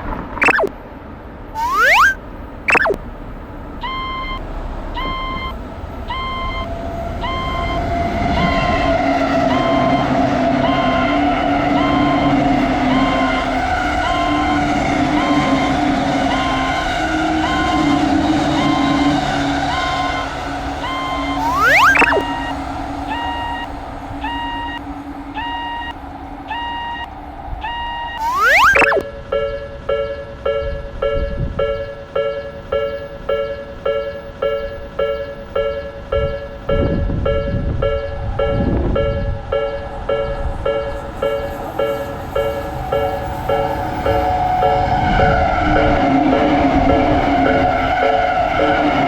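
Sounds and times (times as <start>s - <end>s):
electronic warning beeps: 0.4s - 0.7s, 1.6s - 3.0s, 21.4s - 22.5s, 28.2s - 29.0s
level crossing alarm tone: 0.4s - 0.7s, 1.6s - 3.0s, 21.0s - 22.5s, 28.1s - 29.0s
loud rising sweep: 28.2s - 29.0s.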